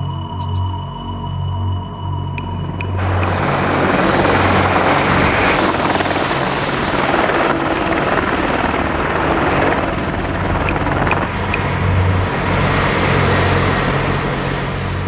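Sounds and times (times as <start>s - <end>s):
helicopter rotor beating: 2.8s - 15.0s
high hiss: 2.9s - 15.0s.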